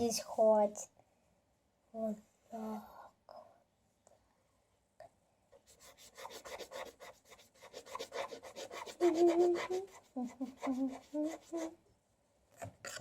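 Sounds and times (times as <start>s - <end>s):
paintbrush scrubbing on paper: 5.6s - 11.8s.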